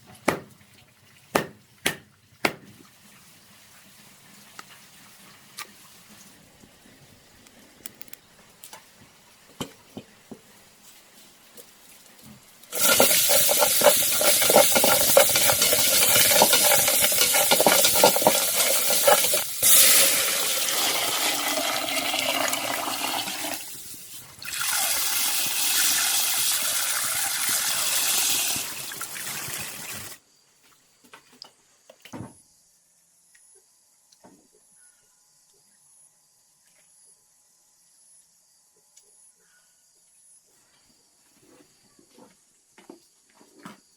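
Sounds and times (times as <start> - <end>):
running water rushing: 24.4 - 30.2.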